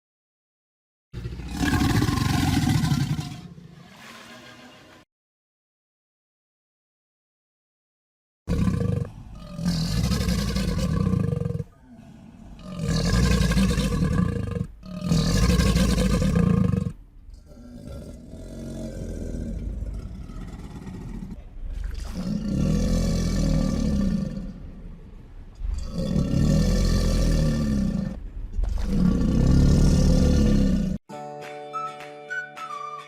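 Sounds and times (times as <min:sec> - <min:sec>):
crocodile roaring: 0:01.2 - 0:04.5, 0:08.5 - 0:31.0.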